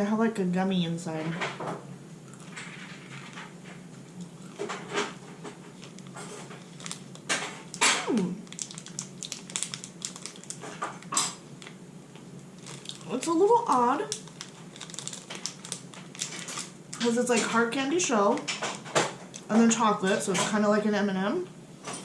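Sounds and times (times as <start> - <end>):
chewing and crunching candy: 2.2 - 17.6.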